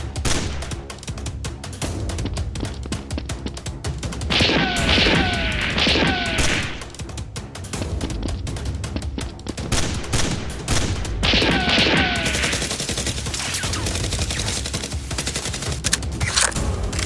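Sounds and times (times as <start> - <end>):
automatic gunfire: 9.8 - 15.9.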